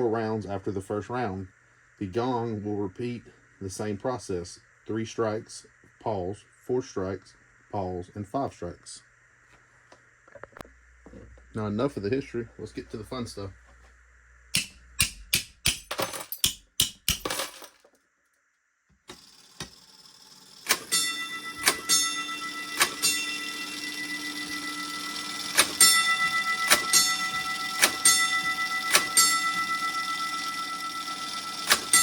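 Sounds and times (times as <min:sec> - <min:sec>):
sharp mechanical clicks: 0:20.6 - 0:21.0, 0:21.6 - 0:21.9, 0:22.8 - 0:23.1, 0:25.5 - 0:25.8, 0:31.6 - 0:32.0
fire alarm gong striking: 0:20.7 - 0:32.0.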